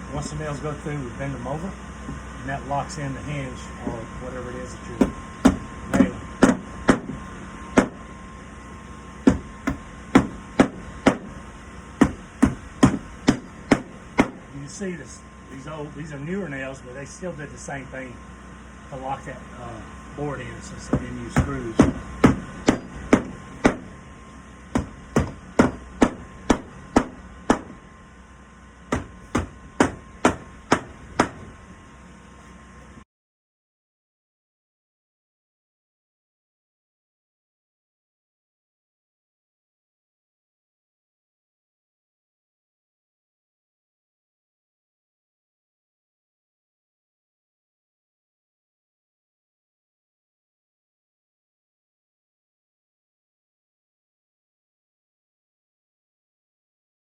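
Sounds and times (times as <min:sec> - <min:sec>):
hammer hitting nails into wood: 0:05.0 - 0:07.2, 0:07.8 - 0:08.0, 0:09.3 - 0:11.3, 0:12.0 - 0:14.4, 0:20.9 - 0:23.9, 0:24.7 - 0:27.8, 0:28.9 - 0:31.5.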